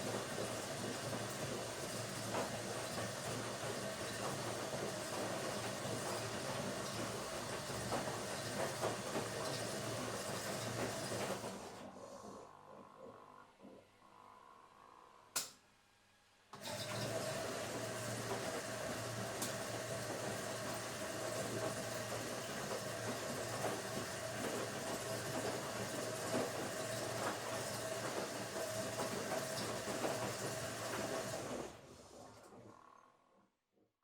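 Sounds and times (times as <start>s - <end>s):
washing machine rushing hum: 0.0s - 13.7s, 16.6s - 32.8s.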